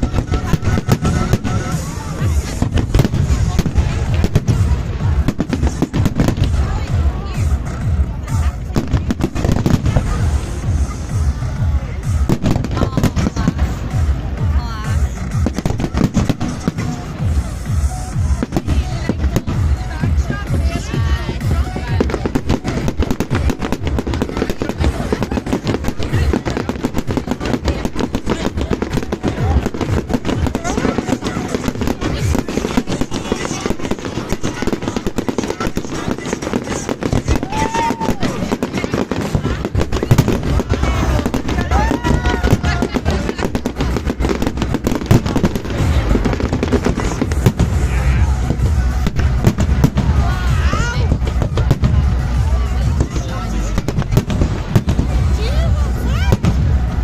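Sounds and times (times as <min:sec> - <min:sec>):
deep firework thuds: 0:00.0 - 0:57.0
fireworks bangs and crackles: 0:00.0 - 0:57.0
low rumble: 0:39.4 - 0:57.0.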